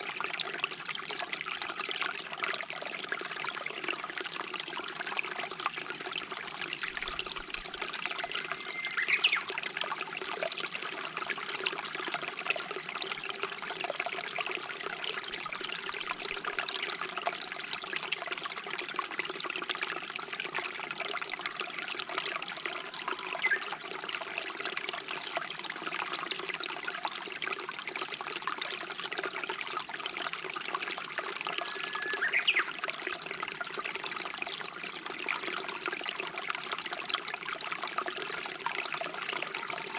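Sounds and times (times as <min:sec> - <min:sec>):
stream babbling over rocks: 0:00.0 - 0:39.9
bird whistled call: 0:08.3 - 0:09.5, 0:23.0 - 0:23.7, 0:31.6 - 0:32.8.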